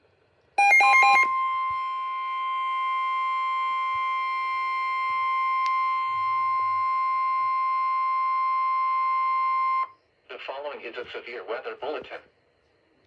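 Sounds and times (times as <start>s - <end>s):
steady electronic alarm tone: 0.6s - 9.9s.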